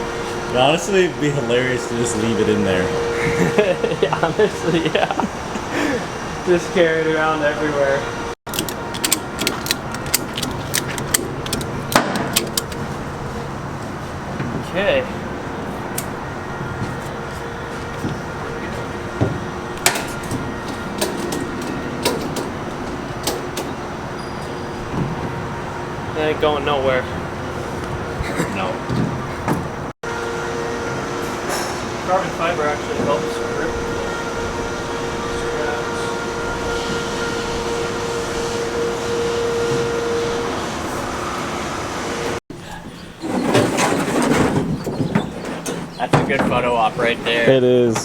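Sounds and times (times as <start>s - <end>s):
steady whine: 0.0s - 42.4s
vehicle road noise: 0.0s - 47.7s
steady mechanical hum: 0.0s - 48.0s
sharp knocks and clunks: 27.9s - 29.9s, 43.2s - 46.9s.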